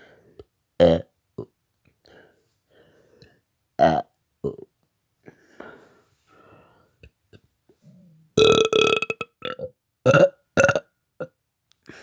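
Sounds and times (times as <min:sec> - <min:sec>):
man burping: 0:00.8 - 0:01.5, 0:03.8 - 0:04.7, 0:07.9 - 0:11.4.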